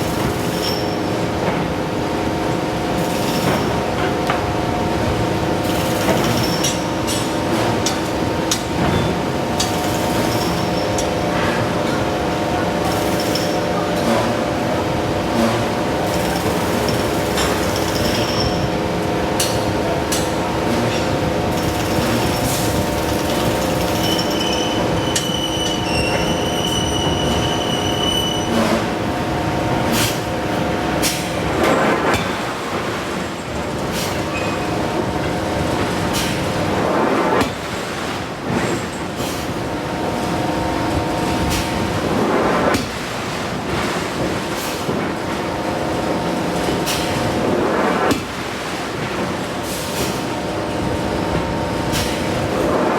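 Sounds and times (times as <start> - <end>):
industrial machinery hum: 0.0 - 52.9.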